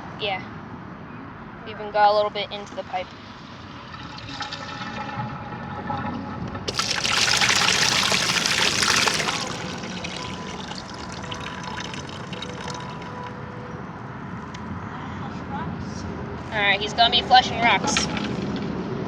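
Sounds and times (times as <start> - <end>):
flush water through drain pipe: 3.2 - 13.6.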